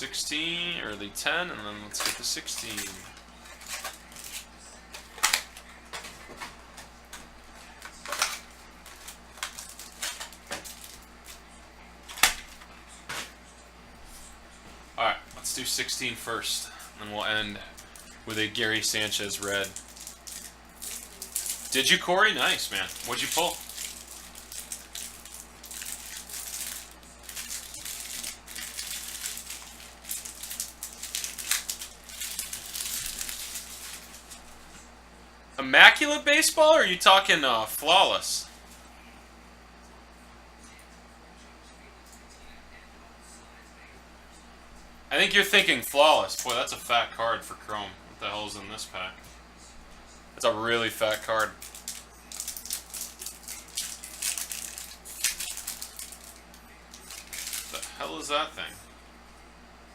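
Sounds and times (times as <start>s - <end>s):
foil packs crinkling: 1.9s - 6.1s, 7.8s - 11.4s, 15.4s - 34.7s, 45.4s - 46.7s, 50.9s - 58.3s.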